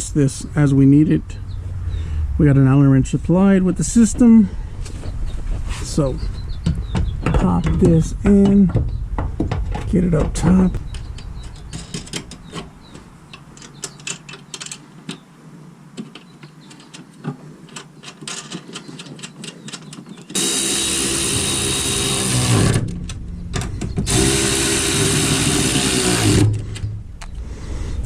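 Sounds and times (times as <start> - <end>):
clicks and knocks of handling parts: 6.6 - 15.3, 15.9 - 20.5
cordless power tool spinning nuts: 20.3 - 22.9, 24.0 - 26.7.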